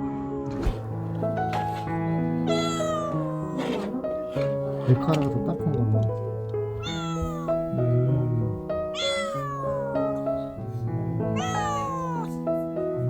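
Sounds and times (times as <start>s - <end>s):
background music with held notes: 0.0s - 13.0s
kitten meowing: 1.7s - 5.1s, 6.8s - 12.6s.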